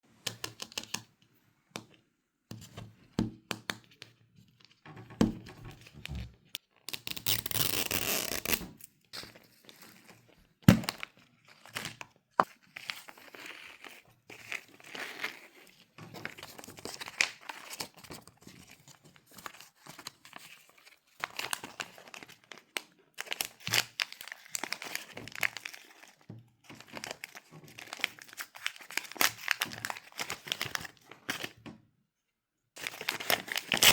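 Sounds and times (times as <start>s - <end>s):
plastic wrappers crinkling and tearing: 6.7s - 31.6s, 32.8s - 33.9s.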